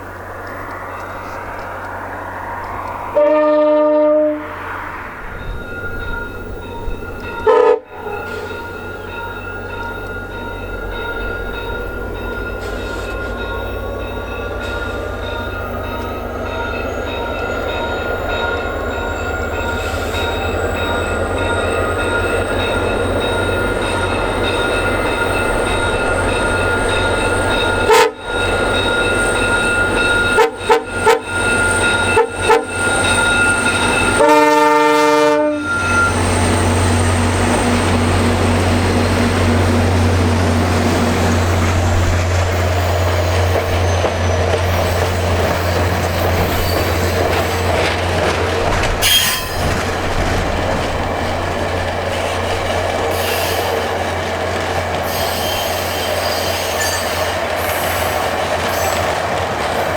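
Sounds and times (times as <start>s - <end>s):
train passing with low rumble: 0.0s - 59.9s
locomotive horn chord: 3.1s - 4.8s, 7.4s - 8.7s, 27.7s - 28.4s, 30.2s - 32.9s, 34.1s - 42.3s
lower-pitched horn blast: 3.1s - 4.8s, 7.4s - 8.5s, 27.8s - 28.3s, 32.0s - 32.8s, 34.1s - 42.3s.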